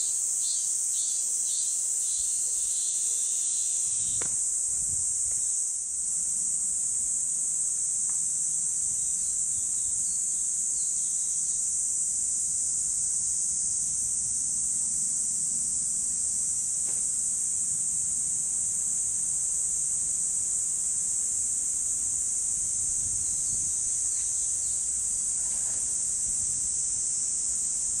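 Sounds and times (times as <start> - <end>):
insect chorus drone: 0.0 - 28.0.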